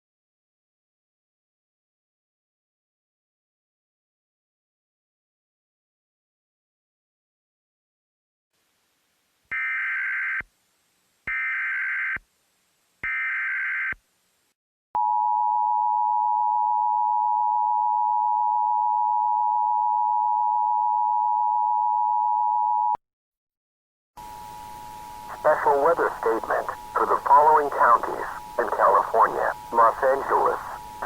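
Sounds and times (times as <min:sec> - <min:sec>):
harsh two-tone attention signal: 0:24.2 - 0:31.0.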